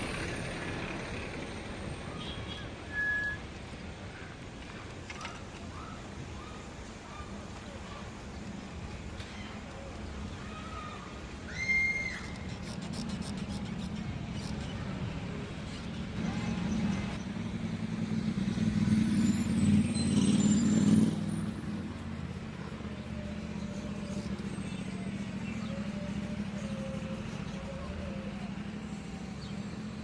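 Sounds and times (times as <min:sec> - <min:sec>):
hum of vehicle engines: 0:00.0 - 0:30.0
vehicle passing close: 0:13.5 - 0:30.0.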